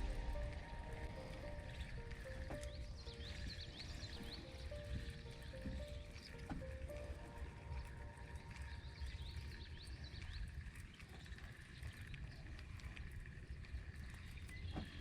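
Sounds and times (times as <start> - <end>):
steady low rumble: 0.0 - 10.8.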